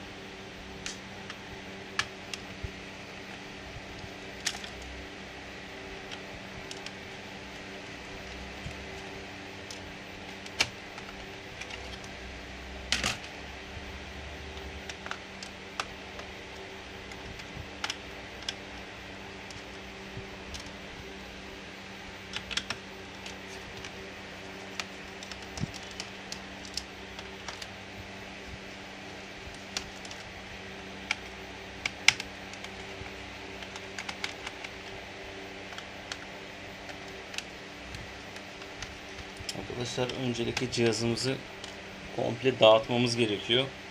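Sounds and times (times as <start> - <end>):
low hum: 0.0 - 43.9
plastic laptop parts clicking: 4.4 - 4.9, 9.7 - 12.1, 17.1 - 18.6, 22.3 - 24.0, 24.6 - 27.7, 29.5 - 30.3, 31.0 - 35.0.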